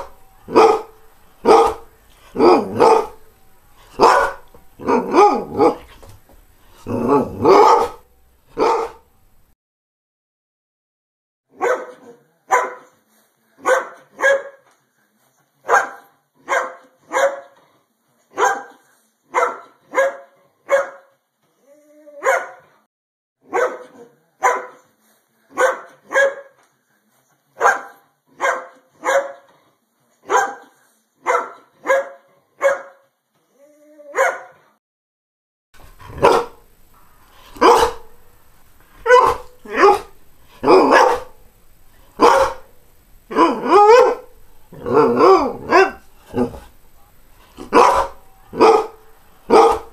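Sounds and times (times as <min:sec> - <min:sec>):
dog barking: 0:00.0 - 0:09.2, 0:11.5 - 0:12.9, 0:13.6 - 0:14.6, 0:15.6 - 0:17.6, 0:18.3 - 0:21.1, 0:22.2 - 0:22.8, 0:23.4 - 0:24.8, 0:25.6 - 0:26.6, 0:27.6 - 0:29.5, 0:30.2 - 0:33.0, 0:34.1 - 0:34.7, 0:35.8 - 0:49.9
background hiss: 0:00.0 - 0:09.5, 0:35.8 - 0:49.9
dog whining: 0:37.1 - 0:38.2, 0:38.9 - 0:46.8.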